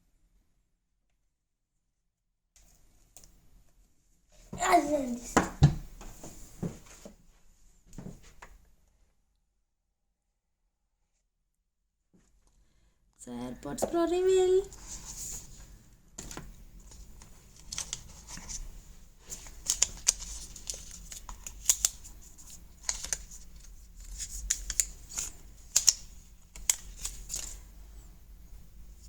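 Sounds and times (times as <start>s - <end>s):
packaging rustling and scraping: 14.7s - 27.6s
sharp clicks of card packaging: 16.2s - 18.6s, 19.3s - 27.6s.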